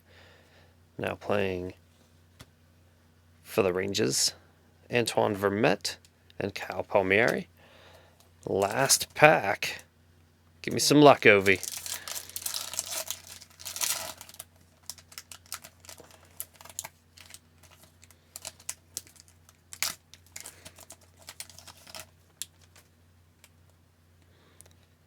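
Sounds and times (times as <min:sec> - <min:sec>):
wrapper crinkling and tearing: 0:08.6 - 0:09.1, 0:11.2 - 0:22.9.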